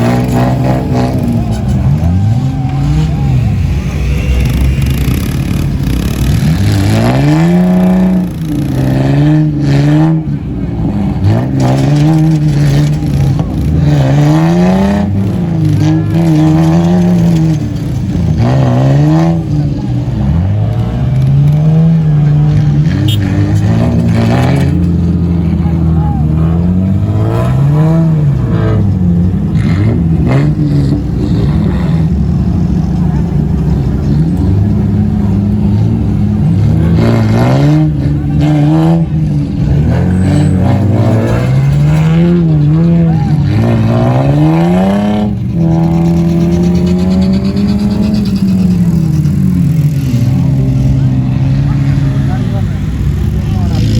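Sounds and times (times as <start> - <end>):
suv engine revving hard: 0.0 - 32.8, 33.4 - 53.9.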